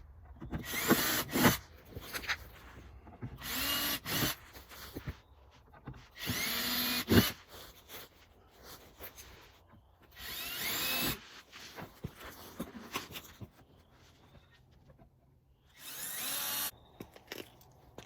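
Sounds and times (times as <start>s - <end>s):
power drill boring plastic: 0.5s - 1.7s, 3.3s - 5.2s, 6.2s - 7.5s, 10.2s - 11.2s, 15.7s - 16.7s.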